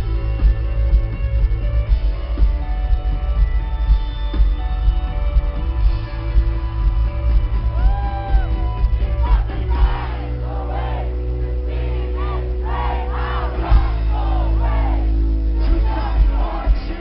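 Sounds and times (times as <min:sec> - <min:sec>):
rock band playing live: 0:00.0 - 0:17.0
crowd singing and shouting along: 0:07.6 - 0:17.0
drums hitting: 0:13.6 - 0:14.2.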